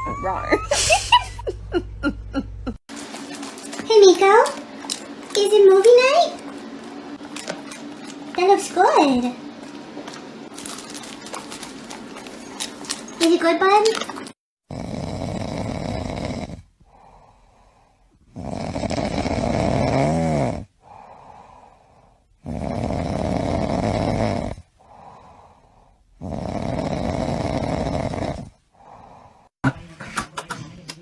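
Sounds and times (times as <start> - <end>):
person snoring: 14.7 - 29.5
quiet breaths: 16.5 - 18.3, 20.8 - 22.4, 24.7 - 26.2, 28.4 - 29.5.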